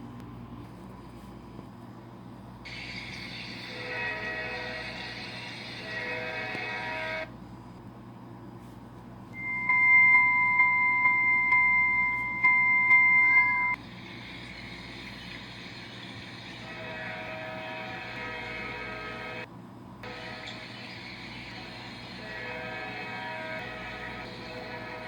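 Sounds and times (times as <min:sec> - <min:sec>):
bell ringing: 0:09.4 - 0:13.8.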